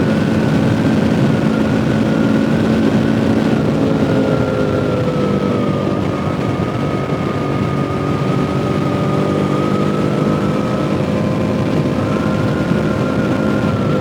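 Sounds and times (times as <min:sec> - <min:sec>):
motorcycle engine cruising: 0:00.0 - 0:14.0.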